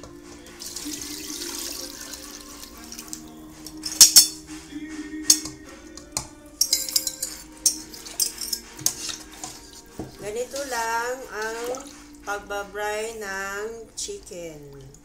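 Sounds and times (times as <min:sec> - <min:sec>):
utensils clinking against bowl: 0:00.0 - 0:12.4
background music: 0:00.0 - 0:15.0
brine pouring over chicken: 0:00.1 - 0:03.8, 0:07.8 - 0:12.4.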